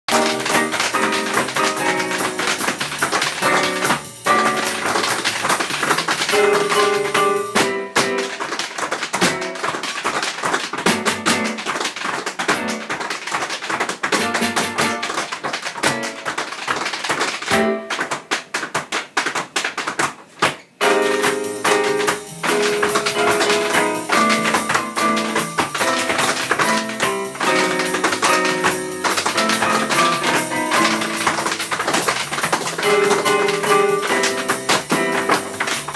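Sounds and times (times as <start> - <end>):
lively flamenco-like music: 0.1 - 35.9.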